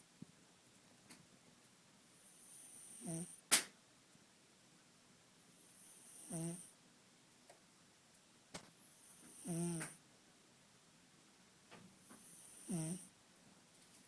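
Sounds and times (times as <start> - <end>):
kitten snoring: 2.2 - 3.5, 5.6 - 6.8, 8.9 - 10.0, 12.1 - 13.2.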